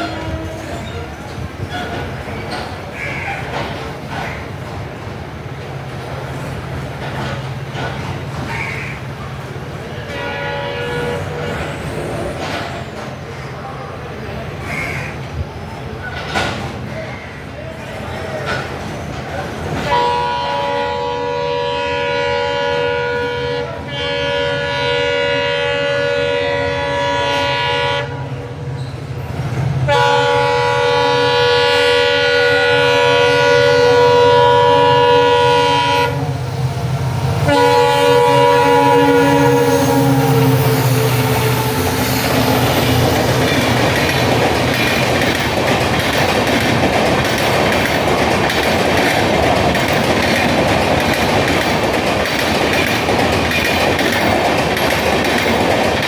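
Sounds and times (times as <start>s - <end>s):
locomotive horns blasting: 0.0s - 1.0s, 9.9s - 11.9s, 19.9s - 28.6s, 29.9s - 44.8s
train coaches rushing past: 0.0s - 56.0s.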